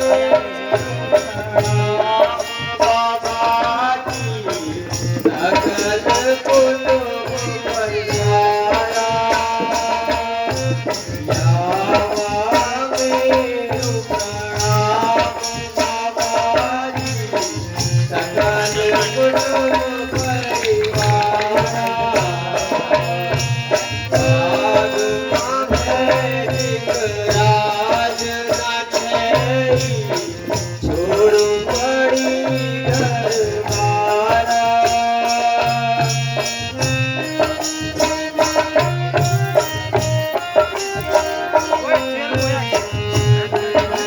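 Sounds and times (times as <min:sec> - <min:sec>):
percussion beat: 0:00.0 - 0:44.0
rattling shaker: 0:18.1 - 0:22.4.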